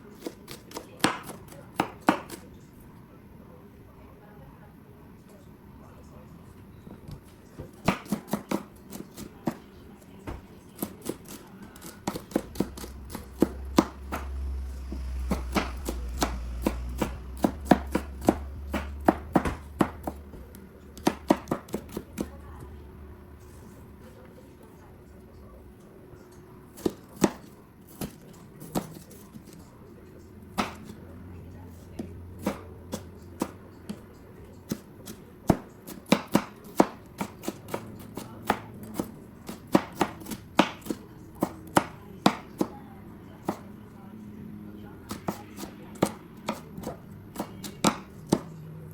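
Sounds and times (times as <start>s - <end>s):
knife chopping on cutting board: 0.2s - 2.4s, 7.6s - 9.6s, 10.2s - 22.4s, 26.7s - 29.6s, 30.6s - 31.0s, 32.0s - 34.0s, 34.7s - 42.8s, 43.4s - 43.7s, 45.1s - 48.5s
low hum: 12.4s - 21.3s, 22.0s - 24.1s.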